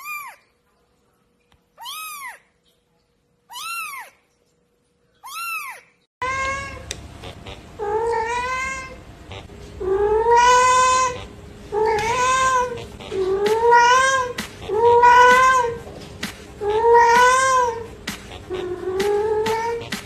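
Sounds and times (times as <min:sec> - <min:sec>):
cat meowing: 0:01.8 - 0:02.4, 0:03.5 - 0:04.2, 0:05.2 - 0:06.8, 0:09.8 - 0:15.8, 0:16.6 - 0:17.8.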